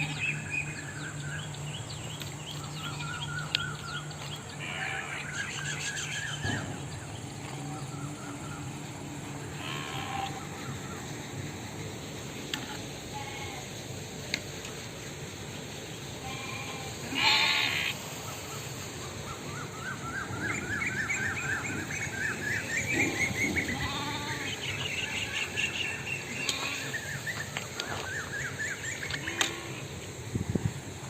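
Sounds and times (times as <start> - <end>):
goats bleating: 16.2 - 17.9, 23.7 - 24.5.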